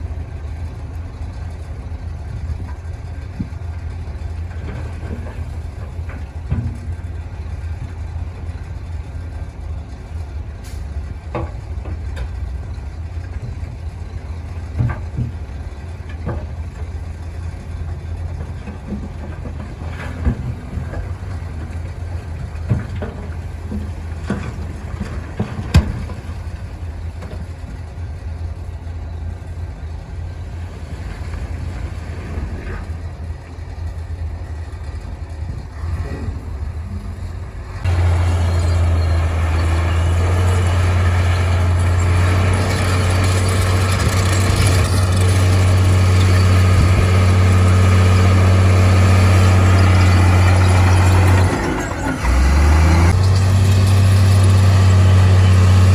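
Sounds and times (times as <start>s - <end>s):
diesel machinery running: 0.0s - 55.9s.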